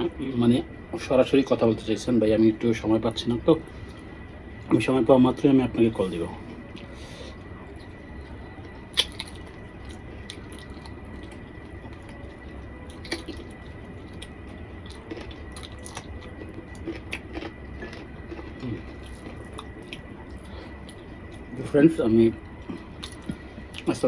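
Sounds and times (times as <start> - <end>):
wet squishy food mixing and chewing: 6.7 - 21.6, 22.6 - 24.0.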